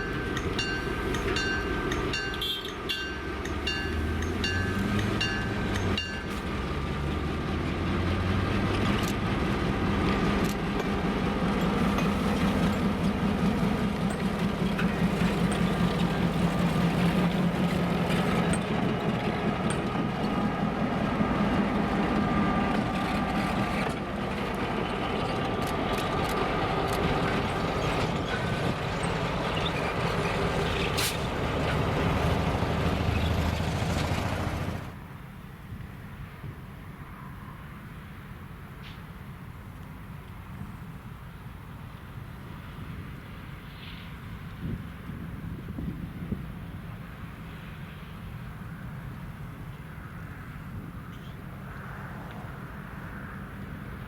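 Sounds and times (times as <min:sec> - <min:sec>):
diesel locomotive engine drone: 0:00.0 - 0:54.0.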